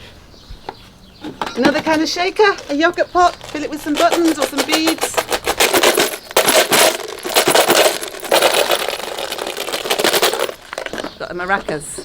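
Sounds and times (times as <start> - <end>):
plastic shaker rattling: 1.6 - 11.1.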